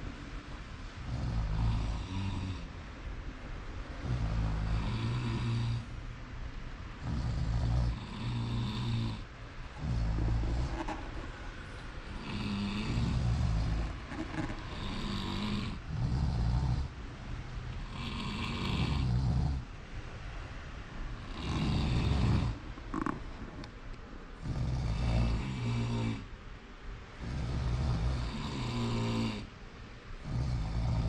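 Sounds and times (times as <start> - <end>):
deep rough snoring: 0.9 - 2.8, 4.0 - 5.9, 7.0 - 17.1, 17.8 - 19.7, 21.2 - 23.3, 24.4 - 26.3, 27.2 - 29.5, 30.2 - 31.0.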